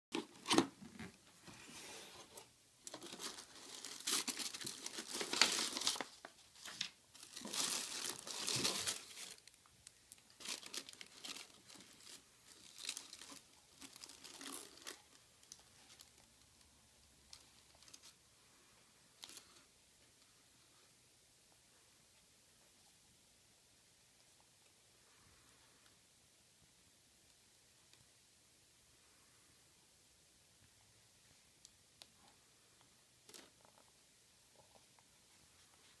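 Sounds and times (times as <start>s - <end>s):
packaging crinkling and rustling: 2.2s - 16.6s.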